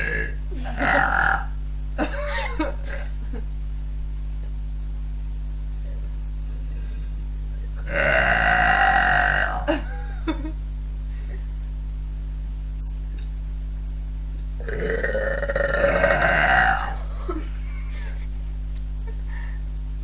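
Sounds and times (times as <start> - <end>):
girl burping: 0.0 - 1.5, 7.9 - 9.8, 14.6 - 17.4
steady low hum: 0.0 - 20.0.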